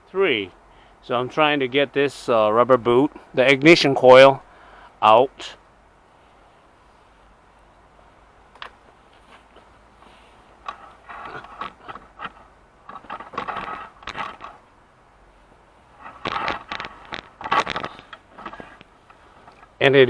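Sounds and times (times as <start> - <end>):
rubber boot clicking and scraping: 8.5 - 14.7, 15.9 - 19.8.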